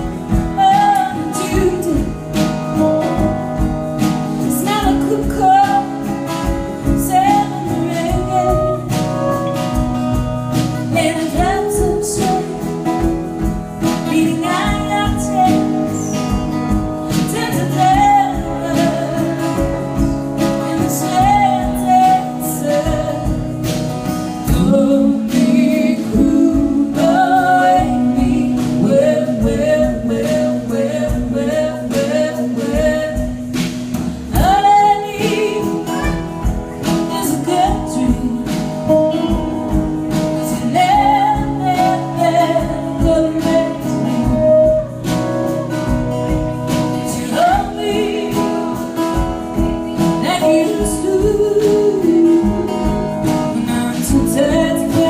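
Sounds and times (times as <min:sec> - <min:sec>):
strummed instruments: 0:00.0 - 0:55.0
woman singing: 0:00.0 - 0:55.0.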